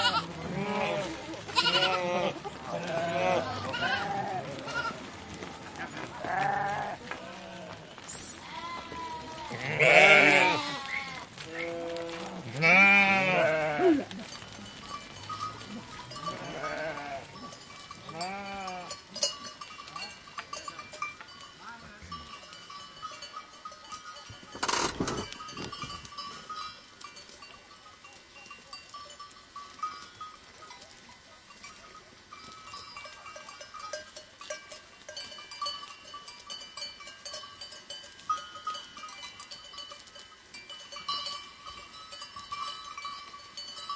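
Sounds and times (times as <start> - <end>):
livestock bells tinkling: 0.0 - 6.9, 12.6 - 43.9
sheep and goats bleating: 0.0 - 26.8.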